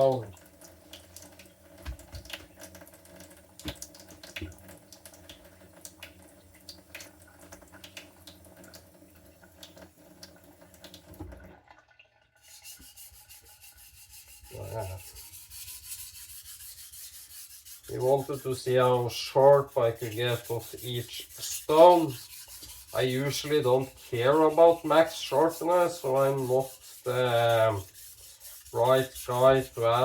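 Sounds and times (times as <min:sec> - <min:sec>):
tap water running: 0:00.0 - 0:30.0
knife rubbing on whetstone: 0:12.5 - 0:30.0.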